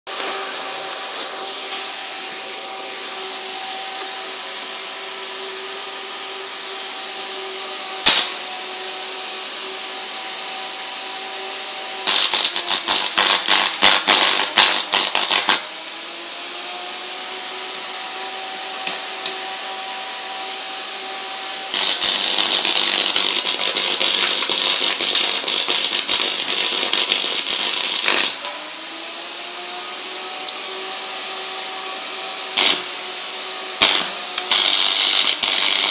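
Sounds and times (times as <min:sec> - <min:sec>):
welding arc crackle: 0:08.0 - 0:08.5, 0:12.0 - 0:15.7, 0:21.7 - 0:28.5, 0:32.6 - 0:32.9, 0:33.8 - 0:35.9
welding transformer humming: 0:08.0 - 0:08.7, 0:12.0 - 0:15.7, 0:21.7 - 0:28.6, 0:32.5 - 0:33.0, 0:33.7 - 0:35.9.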